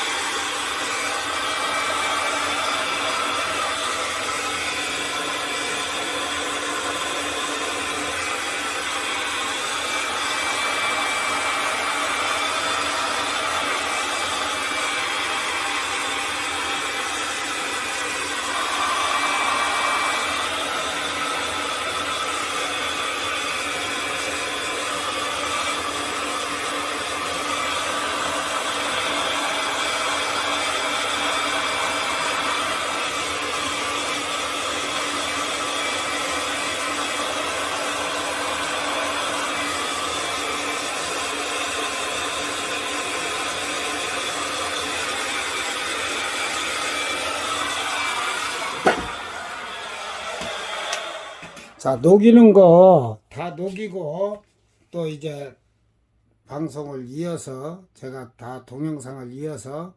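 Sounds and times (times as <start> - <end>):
hot-air blower whooshing: 0.0 - 53.8.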